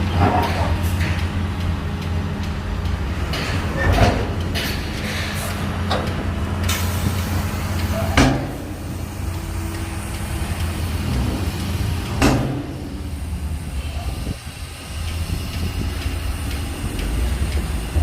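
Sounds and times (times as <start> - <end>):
bulldozer diesel engine running: 0.0 - 18.0
loud metal clanks: 11.0 - 13.0.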